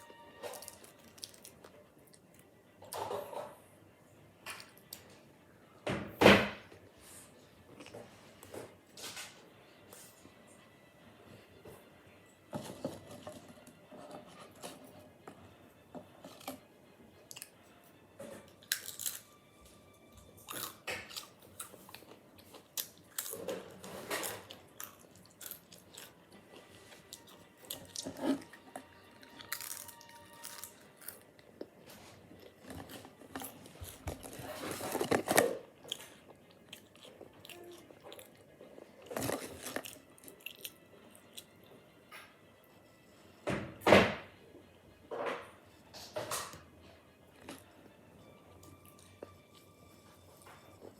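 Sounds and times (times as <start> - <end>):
person crunching potato chips: 0.5 - 1.7, 18.5 - 19.4, 20.4 - 28.5, 29.1 - 31.7, 32.4 - 41.5.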